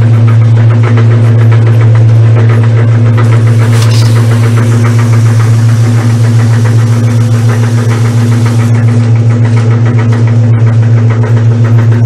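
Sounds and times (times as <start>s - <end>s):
washing machine motor hum: 0.0s - 12.0s
rapid even rattle: 3.2s - 10.3s.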